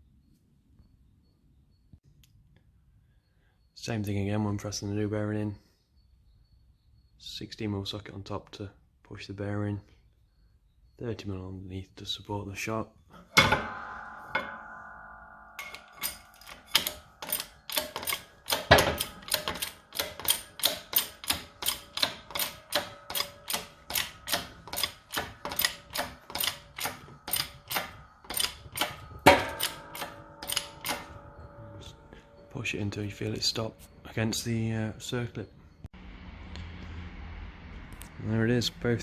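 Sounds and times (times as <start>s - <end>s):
ringing metallic clanks: 13.1s - 35.9s
sharp metallic clicks of a press: 15.6s - 31.9s.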